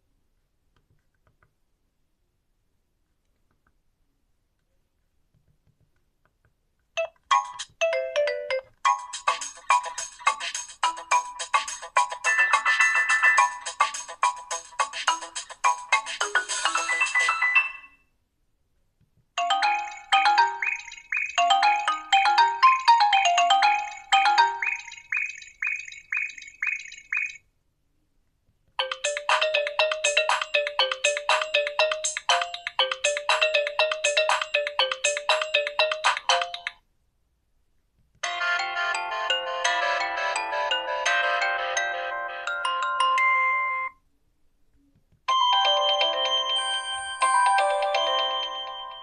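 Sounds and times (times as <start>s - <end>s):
phone ringtone melodies: 7.0s - 18.0s, 19.4s - 27.4s, 28.8s - 36.8s, 38.2s - 44.0s, 45.3s - 49.0s.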